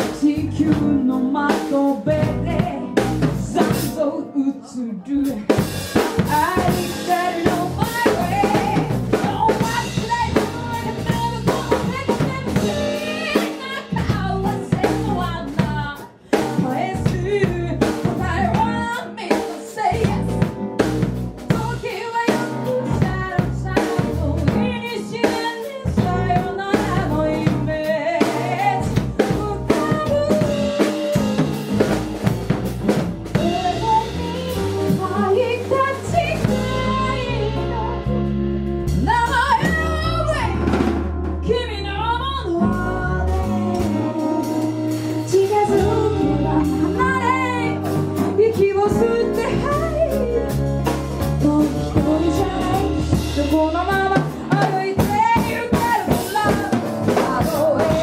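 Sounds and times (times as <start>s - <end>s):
person singing: 0.0s - 3.0s, 21.5s - 31.8s, 33.3s - 38.2s, 42.0s - 50.6s, 51.3s - 58.0s
drum kit beat: 0.0s - 4.2s, 5.2s - 58.0s
bass notes: 0.0s - 19.2s, 19.8s - 58.0s.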